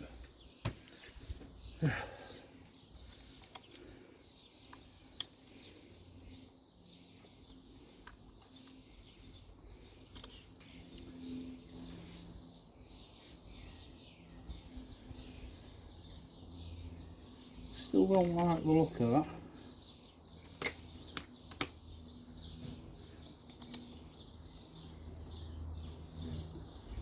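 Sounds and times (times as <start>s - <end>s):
birds chirping: 0.0s - 27.0s
clicks of small parts handled: 3.2s - 3.9s, 10.1s - 10.8s, 20.4s - 21.8s, 23.4s - 24.0s.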